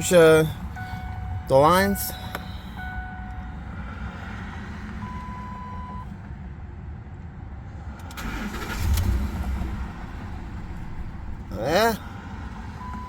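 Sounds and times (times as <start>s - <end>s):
electronic beep: 0.8s - 3.5s
engine cranking and starting: 8.0s - 11.1s.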